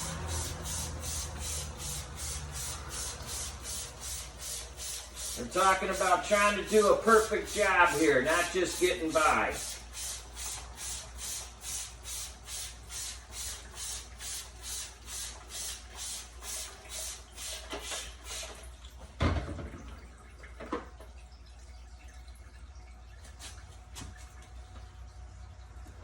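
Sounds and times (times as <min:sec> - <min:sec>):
spray bottle squirting: 0:00.0 - 0:18.7.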